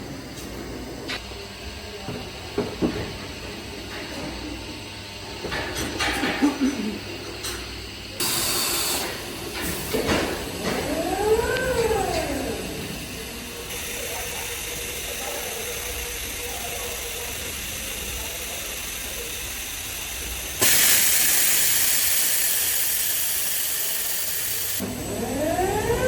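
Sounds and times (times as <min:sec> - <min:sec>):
machine humming: 0:06.3 - 0:26.0
air hissing: 0:08.2 - 0:10.5, 0:12.1 - 0:24.8.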